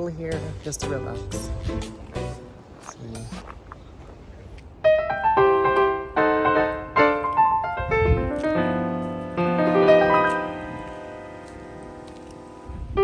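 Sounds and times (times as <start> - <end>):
piano playing gentle melody: 4.8 - 13.0.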